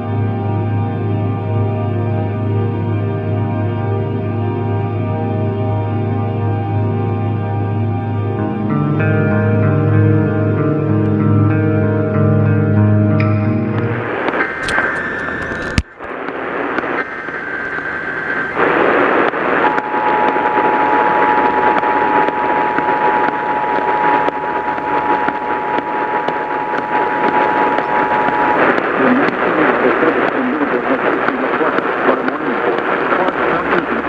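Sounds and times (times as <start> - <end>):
radio static hiss: 13.8 - 34.0
two-tone attention signal: 13.9 - 30.9.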